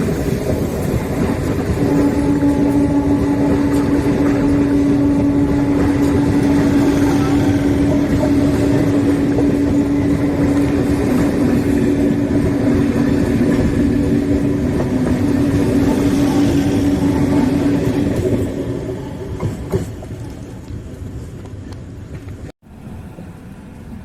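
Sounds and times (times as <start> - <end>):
train rumble: 0.0 - 24.0
train horn long note: 1.8 - 11.4, 15.4 - 18.3.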